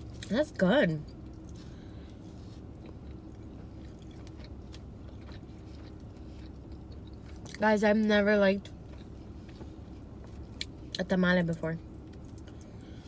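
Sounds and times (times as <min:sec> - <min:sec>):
steady low hum: 0:00.0 - 0:13.0
person chewing food: 0:01.1 - 0:07.6, 0:08.7 - 0:10.9.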